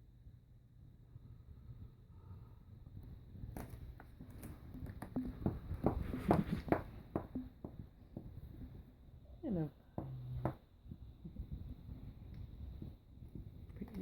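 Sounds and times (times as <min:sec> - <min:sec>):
pet snoring: 0:09.6 - 0:10.6.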